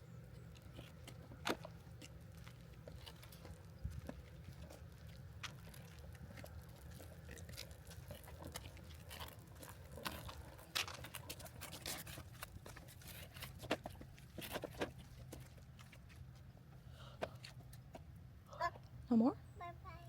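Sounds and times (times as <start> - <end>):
child crunching a snack: 0.5 - 16.0.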